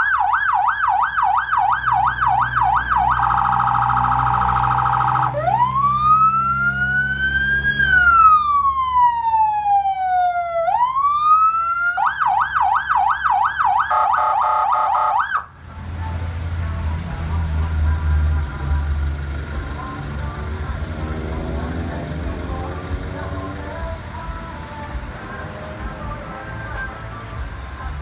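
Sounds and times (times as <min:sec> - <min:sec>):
electronic vehicle siren: 0:00.0 - 0:15.6
low engine hum: 0:01.0 - 0:11.4, 0:15.5 - 0:28.0.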